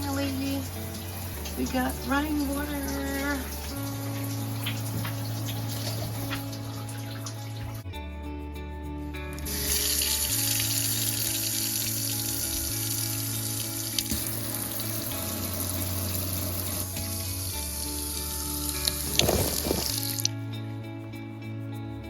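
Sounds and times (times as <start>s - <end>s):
tap water running into sink: 0.0s - 7.8s, 9.4s - 20.3s
background music: 0.0s - 22.0s.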